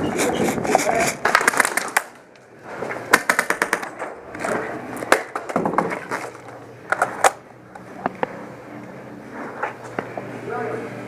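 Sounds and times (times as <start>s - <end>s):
hard objects clacking: 0.0s - 7.4s.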